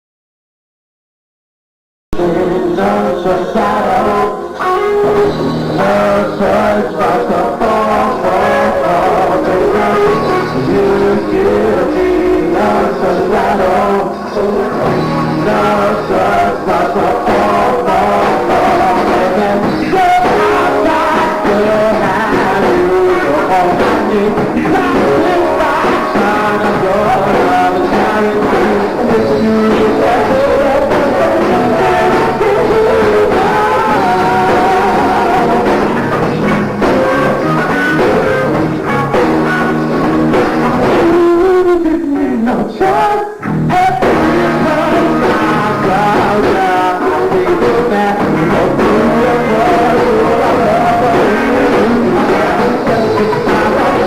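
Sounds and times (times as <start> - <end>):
guitar: 2.1 - 54.0
live band playing: 2.2 - 41.8, 42.8 - 54.0
person singing: 2.2 - 54.0.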